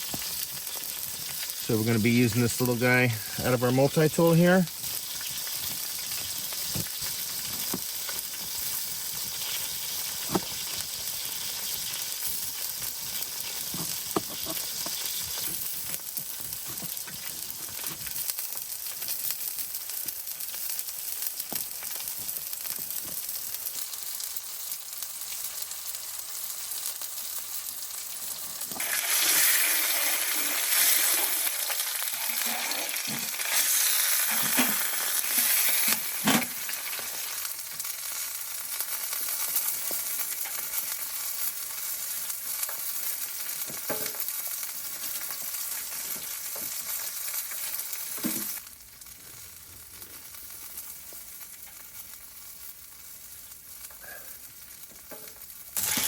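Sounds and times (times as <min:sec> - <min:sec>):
food sizzling in a pan: 0:00.0 - 0:56.0.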